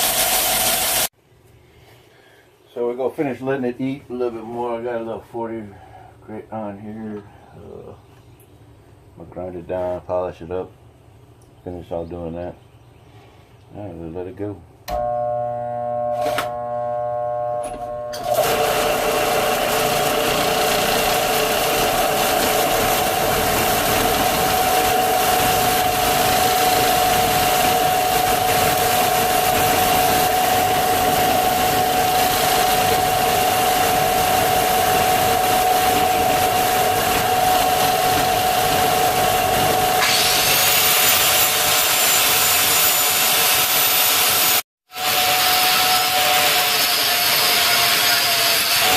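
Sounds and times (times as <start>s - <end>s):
high whine: 14.9s - 19.4s, 21.0s - 40.0s
belt sander grinding steel: 15.9s - 48.9s.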